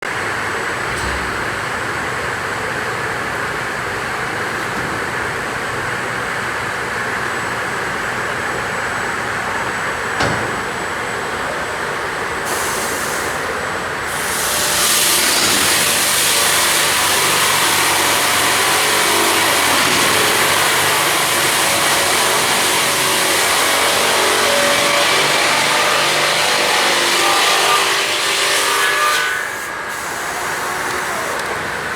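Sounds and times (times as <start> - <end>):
sawmill running: 0.0 - 31.9
saw cutting log with rushing hiss: 12.4 - 31.7.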